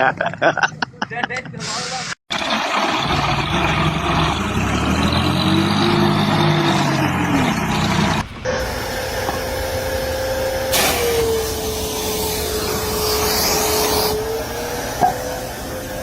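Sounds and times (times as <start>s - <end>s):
motor whining hum: 8.4s - 16.0s
rushing hiss: 8.5s - 16.0s.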